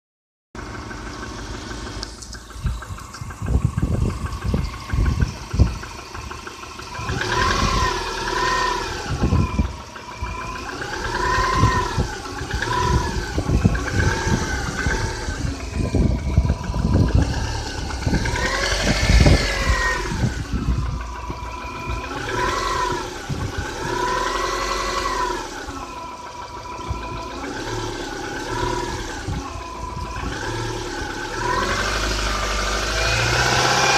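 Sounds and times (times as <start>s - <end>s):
car engine knocking and revving: 0.6s - 33.9s.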